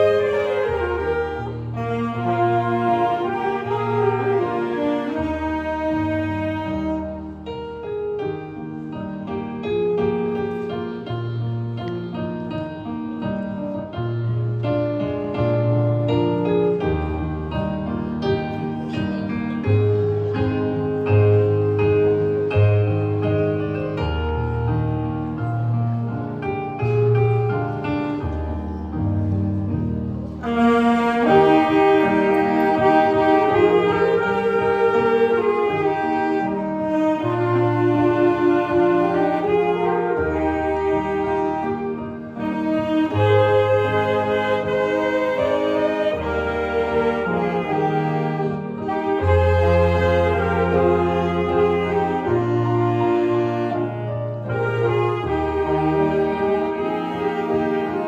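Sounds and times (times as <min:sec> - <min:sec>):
low held bass notes: 0:00.0 - 0:08.8, 0:14.1 - 0:58.0
wind ensemble playing slow tune: 0:00.0 - 0:58.0.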